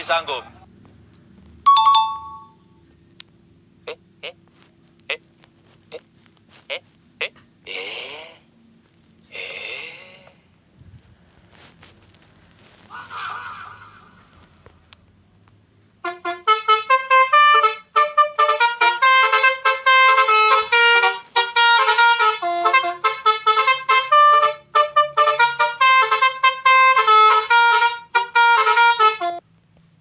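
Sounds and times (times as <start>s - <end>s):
fast horn melody: 16.0s - 29.4s.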